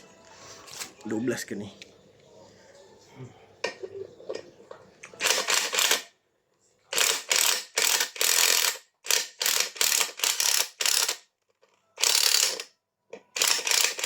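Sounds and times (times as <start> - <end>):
ratchet wrench clicking: 5.2 - 6.0, 7.0 - 11.2, 12.0 - 12.7, 13.4 - 14.0.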